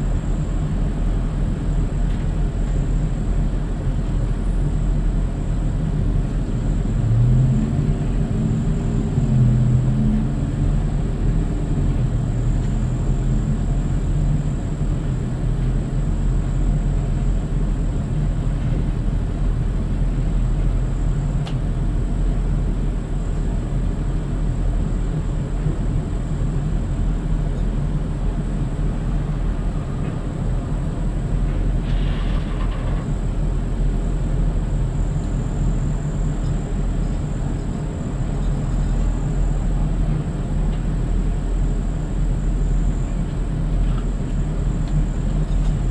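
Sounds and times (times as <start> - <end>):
vehicle engine rumble: 0.0 - 45.9.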